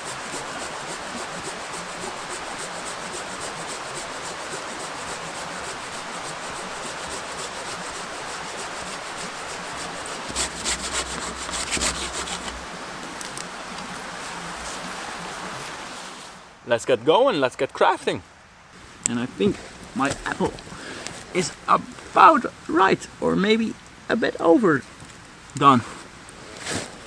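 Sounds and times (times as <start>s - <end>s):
hand tool scraping wood: 0.0s - 12.6s, 19.3s - 22.1s.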